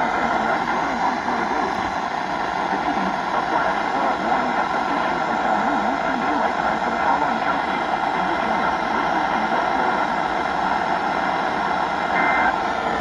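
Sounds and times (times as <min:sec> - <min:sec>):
radio static hiss: 0:00.0 - 0:13.0
faint wavering voice-like sound: 0:12.1 - 0:13.0.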